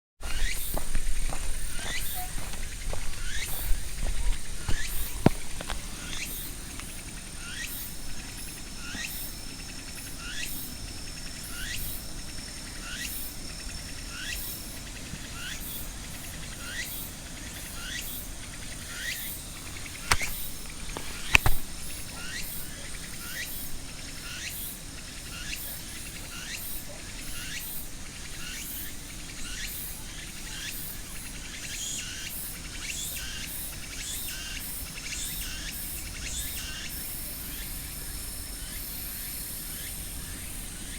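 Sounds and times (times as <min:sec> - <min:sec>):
insects buzzing and chirping: 0:00.2 - 0:40.9.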